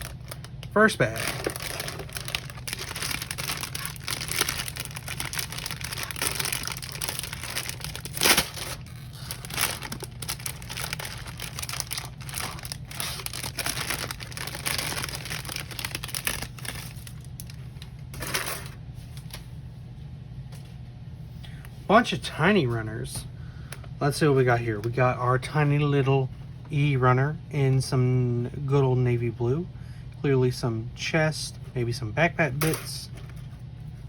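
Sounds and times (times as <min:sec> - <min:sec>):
plastic bag crinkling: 0:00.0 - 0:19.4.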